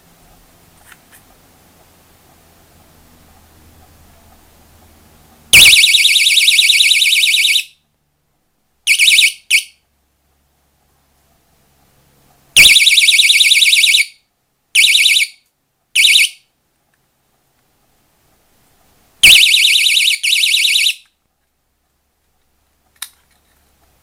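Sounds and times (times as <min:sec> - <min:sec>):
warbling alarm siren: 0:05.5 - 0:07.7, 0:08.9 - 0:09.7, 0:12.6 - 0:14.2, 0:14.8 - 0:15.4, 0:16.0 - 0:16.4, 0:19.2 - 0:21.0.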